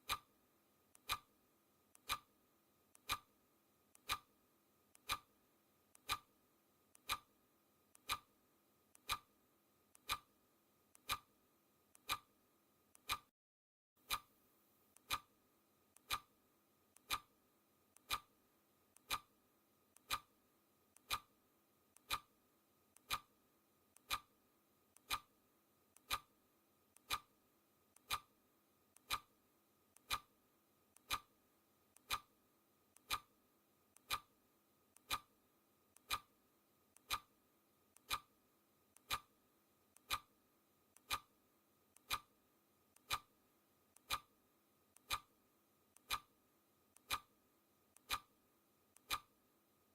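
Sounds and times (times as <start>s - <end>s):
clock ticking: 0.0s - 0.3s, 0.9s - 1.3s, 1.9s - 2.3s, 2.9s - 3.3s, 3.9s - 4.3s, 4.9s - 5.3s, 6.0s - 6.3s, 6.9s - 7.3s, 7.9s - 8.3s, 8.9s - 9.3s, 9.9s - 10.3s, 11.0s - 11.3s, 12.0s - 12.3s, 13.0s - 13.3s, 14.0s - 14.3s, 15.0s - 15.3s, 15.9s - 16.3s, 16.9s - 17.3s, 17.9s - 18.3s, 18.9s - 19.3s, 19.9s - 20.3s, 20.9s - 21.3s, 21.9s - 22.3s, 22.9s - 23.3s, 23.9s - 24.3s, 24.9s - 25.3s, 25.9s - 26.3s, 26.9s - 27.3s, 27.9s - 28.3s, 29.0s - 29.3s, 30.0s - 30.3s, 30.9s - 31.3s, 31.9s - 32.3s, 32.9s - 33.3s, 34.0s - 34.3s, 35.0s - 35.4s, 36.0s - 36.4s, 37.0s - 37.4s, 38.0s - 38.3s, 39.0s - 39.3s, 40.0s - 40.3s, 40.9s - 41.3s, 41.9s - 42.3s, 43.0s - 43.3s, 43.9s - 44.3s, 45.0s - 45.4s, 46.0s - 46.3s, 46.9s - 47.4s, 48.0s - 48.3s, 48.9s - 49.4s.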